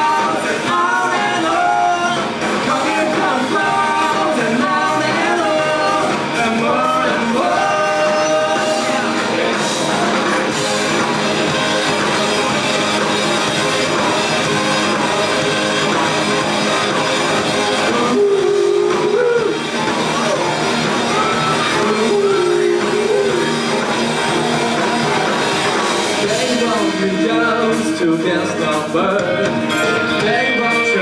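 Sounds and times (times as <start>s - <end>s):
rock band playing: 0.0s - 31.0s.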